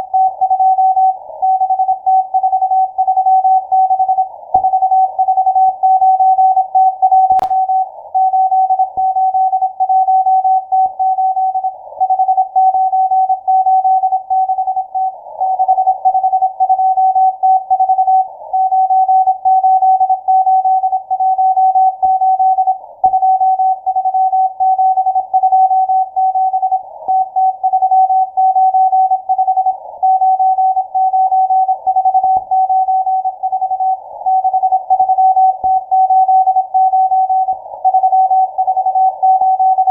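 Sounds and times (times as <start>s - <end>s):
static clicks: 7.4s - 7.6s
morse code beeps: 27.7s - 39.9s.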